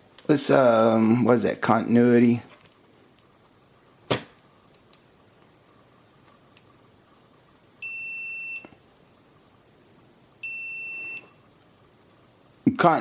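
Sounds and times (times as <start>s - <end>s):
multimeter continuity beeps: 7.8s - 8.8s, 10.4s - 11.5s.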